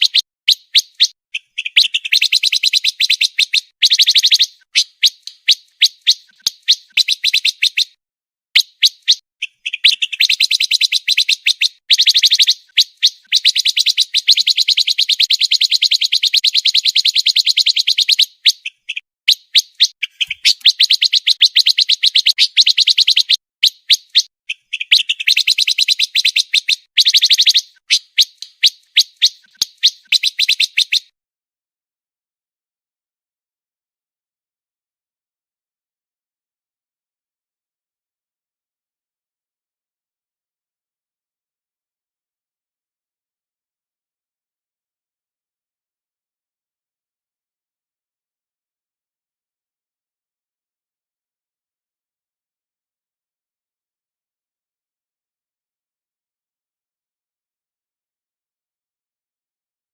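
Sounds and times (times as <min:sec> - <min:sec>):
songbird rapid high chirps: 0:00.0 - 0:08.0, 0:08.6 - 0:31.1.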